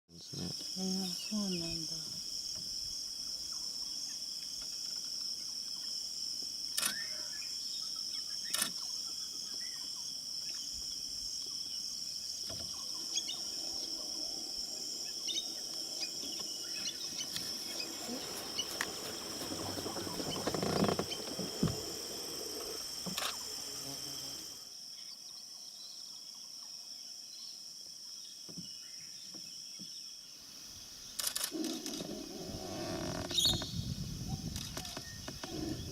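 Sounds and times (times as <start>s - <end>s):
high-pitched insect buzzing: 12.8s - 24.7s.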